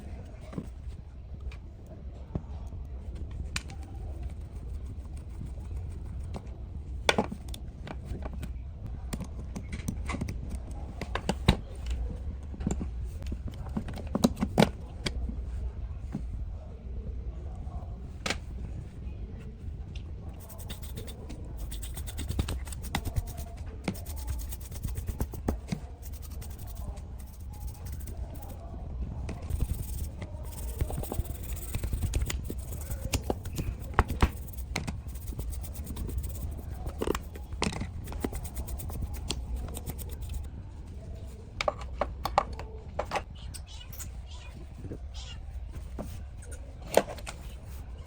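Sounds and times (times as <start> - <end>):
clicks taps and scraping of handwork: 6.3 - 15.2.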